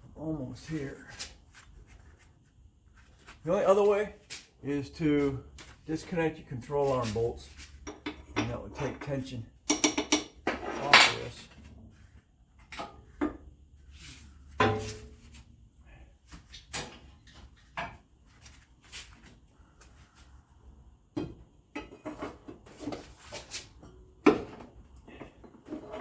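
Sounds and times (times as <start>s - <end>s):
metal tools knocking on metal: 7.9s - 11.3s.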